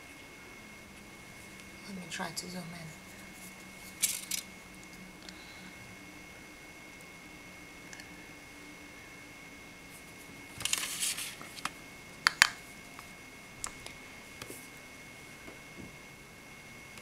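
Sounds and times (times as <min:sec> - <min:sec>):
plastic crinkling rustle: 0:10.5 - 0:11.8.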